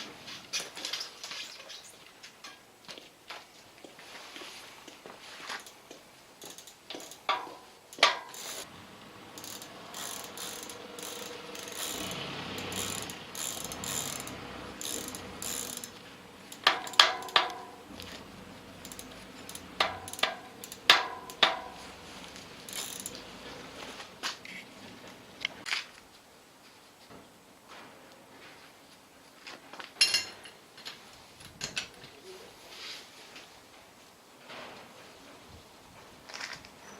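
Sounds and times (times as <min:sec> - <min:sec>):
sharp knocks from sprocket: 0:06.4 - 0:08.7, 0:09.4 - 0:17.8, 0:18.8 - 0:21.8, 0:22.7 - 0:23.2
bicycle freewheel ratcheting: 0:06.4 - 0:23.8.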